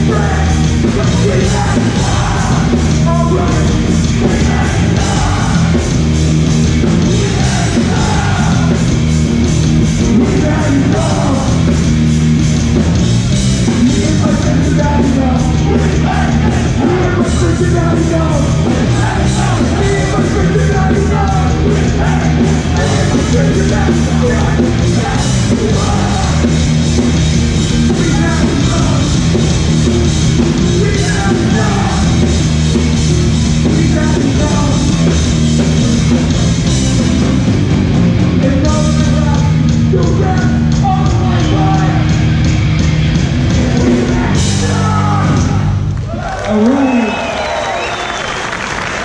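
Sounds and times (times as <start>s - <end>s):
shouted vocals: 0.0s - 5.9s, 7.0s - 9.0s, 13.9s - 26.8s, 30.6s - 32.3s, 43.5s - 49.0s
distorted guitars: 0.0s - 47.0s
bass: 0.0s - 49.0s
drums: 0.0s - 49.0s.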